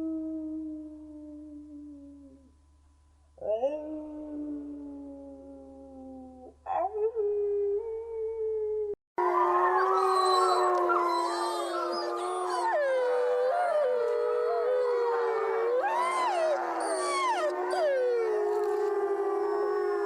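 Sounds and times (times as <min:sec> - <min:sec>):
dog howling: 0:09.2 - 0:20.0
many dogs howling together: 0:09.2 - 0:20.0.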